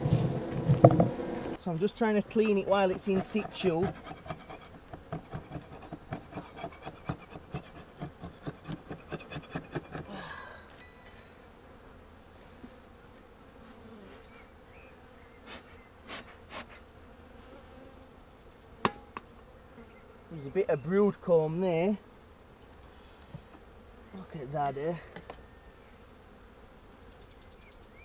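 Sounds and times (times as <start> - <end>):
scraping on beehive frames: 0.0 - 10.2
honeybees buzzing: 0.0 - 28.0.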